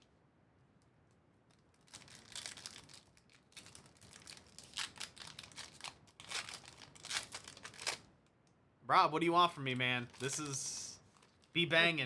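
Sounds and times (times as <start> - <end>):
foil wrapper crinkling: 1.7 - 8.1, 9.7 - 11.6.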